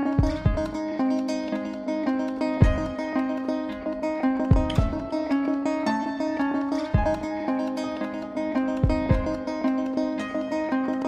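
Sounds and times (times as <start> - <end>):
plucked string instrument music: 0.0 - 11.0
deep drum-like thumps: 0.1 - 0.8, 2.6 - 3.0, 4.4 - 5.2, 6.8 - 7.4, 8.8 - 9.5.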